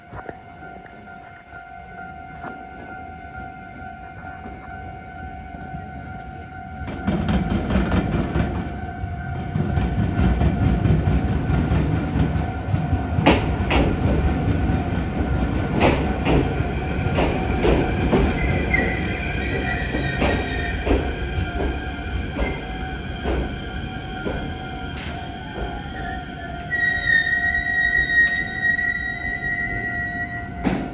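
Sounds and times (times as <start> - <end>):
train rumble: 0.0 - 30.9
train wheels clacking on track: 6.8 - 8.8, 9.5 - 27.2, 30.6 - 30.9
wheel squeal: 17.6 - 21.2, 22.4 - 30.9.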